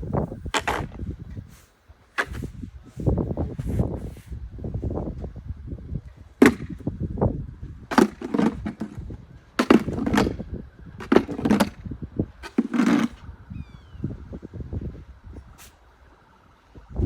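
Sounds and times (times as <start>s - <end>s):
hand tool scraping ice: 12.4s - 13.2s.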